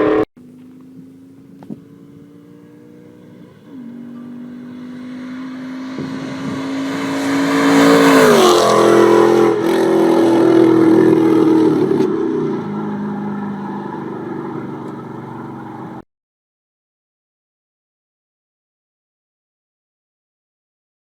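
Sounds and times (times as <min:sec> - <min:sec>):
car engine pulling hard: 0:00.0 - 0:16.0.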